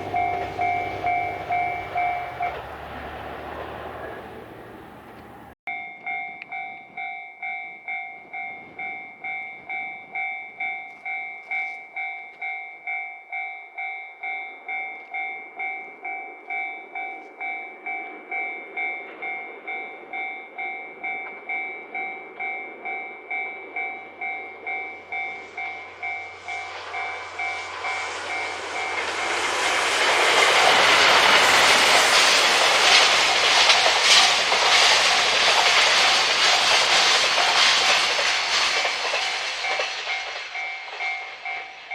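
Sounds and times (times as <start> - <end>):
diesel train engine hum: 0.0 - 5.6, 14.6 - 41.9
level-crossing warning bell: 0.0 - 41.9
wheels on rails: 0.0 - 41.9.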